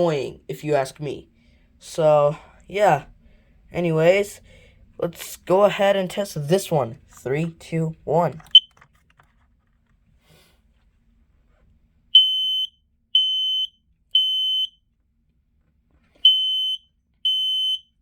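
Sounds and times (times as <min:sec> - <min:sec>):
smoke alarm beeps: 0:12.2 - 0:14.8, 0:16.2 - 0:18.0.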